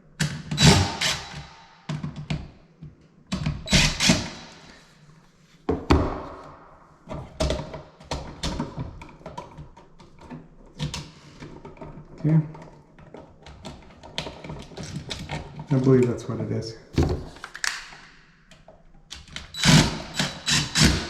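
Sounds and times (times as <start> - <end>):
tools knocking and clunking: 17.0 - 17.5.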